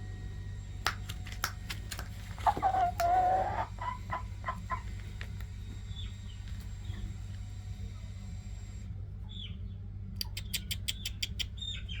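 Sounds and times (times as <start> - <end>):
steady low hum: 0.0 - 12.0
bird chirping: 2.3 - 5.0, 5.8 - 7.1, 9.2 - 12.0.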